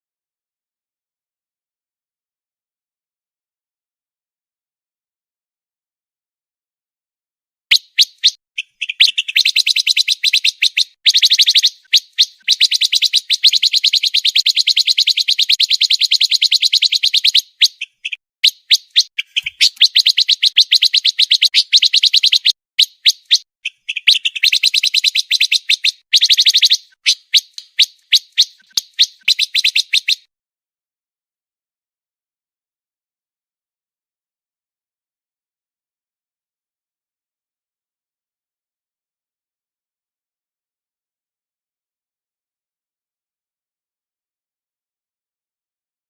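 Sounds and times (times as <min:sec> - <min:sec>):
songbird trilling song: 0:07.7 - 0:30.3.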